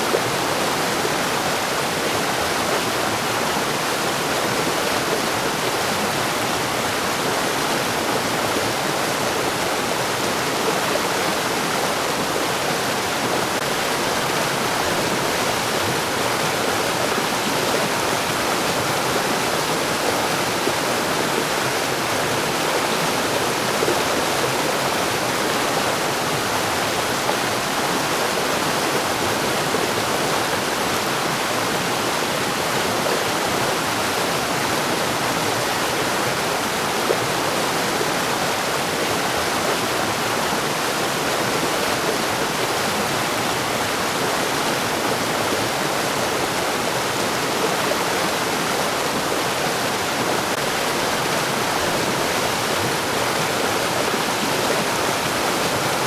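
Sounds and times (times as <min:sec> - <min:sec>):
stream flowing over rocks: 0:00.0 - 0:56.0.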